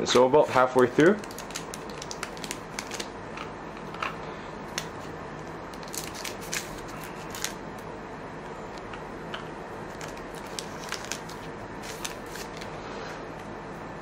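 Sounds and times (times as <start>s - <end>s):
foil wrapper crinkling: 0.8s - 3.1s, 5.7s - 7.6s, 9.9s - 12.7s.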